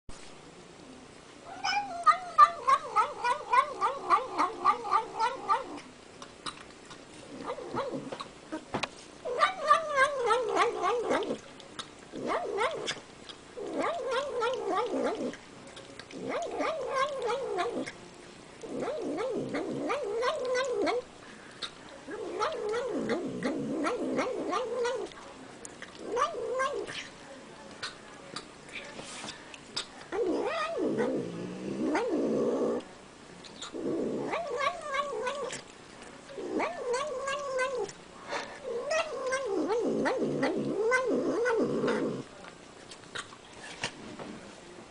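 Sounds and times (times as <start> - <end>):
cat eating: 0.6 - 44.6
cat making wavering cry: 1.5 - 5.8.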